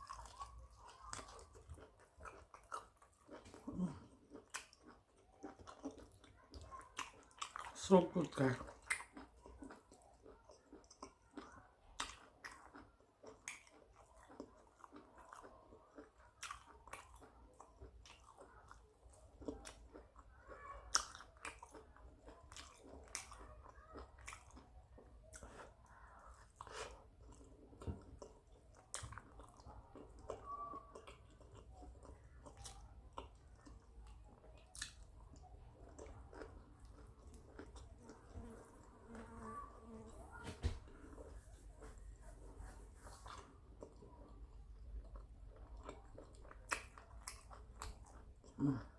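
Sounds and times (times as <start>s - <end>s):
person chewing food: 0.0s - 48.9s
mouth clicks and smacks: 45.1s - 48.6s.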